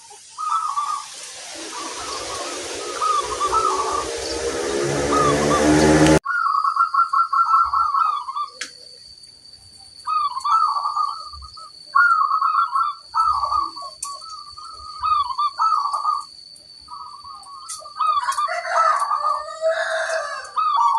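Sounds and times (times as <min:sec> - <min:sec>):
steady high-pitched tone: 0:00.4 - 0:06.2
small birds chirping: 0:06.3 - 0:19.6.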